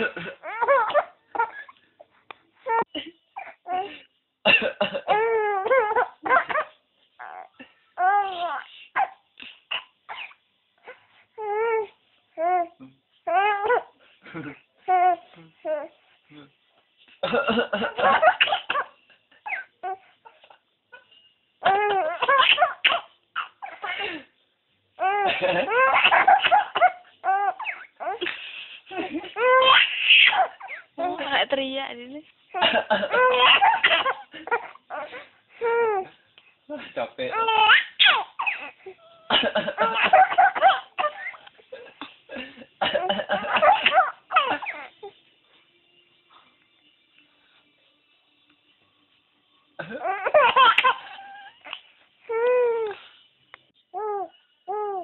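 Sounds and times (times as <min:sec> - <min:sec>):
man coughing: 0:00.0 - 0:01.0, 0:04.5 - 0:05.1, 0:17.2 - 0:18.8, 0:25.2 - 0:26.9, 0:32.6 - 0:34.6, 0:39.3 - 0:40.8, 0:41.7 - 0:44.7, 0:49.8 - 0:50.3
baby laughing: 0:00.0 - 0:01.8, 0:05.1 - 0:10.4, 0:21.7 - 0:24.2, 0:25.0 - 0:31.0, 0:32.6 - 0:36.0, 0:37.2 - 0:41.9, 0:43.0 - 0:45.1, 0:49.8 - 0:52.9.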